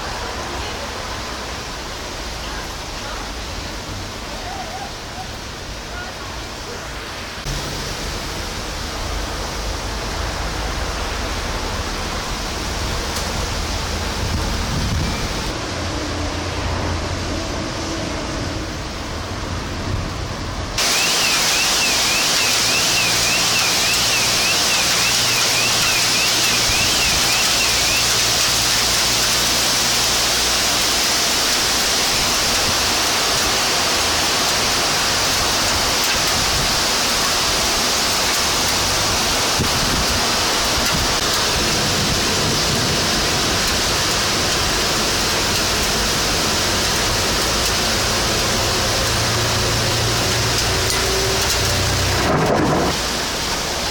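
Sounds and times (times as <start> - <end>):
heavy rain and hail: 0.0 - 53.9
high warbling tone: 20.8 - 28.4.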